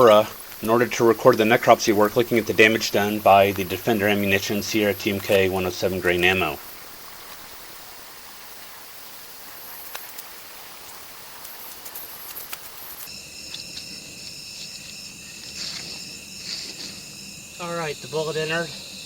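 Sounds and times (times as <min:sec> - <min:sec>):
even hiss: 0:00.0 - 0:19.0
night insects chorus: 0:00.0 - 0:19.0
faint clicks: 0:07.2 - 0:07.5, 0:09.7 - 0:17.0.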